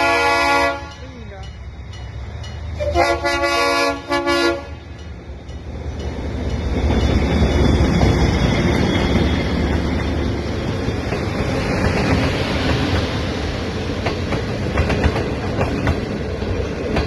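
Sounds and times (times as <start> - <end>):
locomotive horn chord: 0.0 - 1.0, 2.8 - 4.9
diesel locomotive rumble: 0.0 - 17.0.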